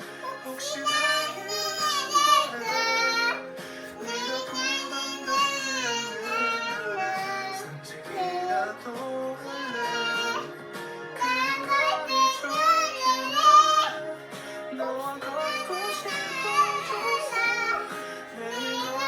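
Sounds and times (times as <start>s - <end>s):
high voice singing: 0.2s - 19.0s.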